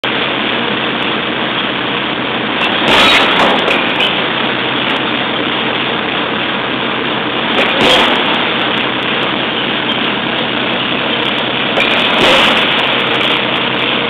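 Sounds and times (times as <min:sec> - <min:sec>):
pile-driving rig engine running: 0:00.0 - 0:14.0
loud sudden strike: 0:02.6 - 0:04.4, 0:07.5 - 0:08.8, 0:11.0 - 0:13.8.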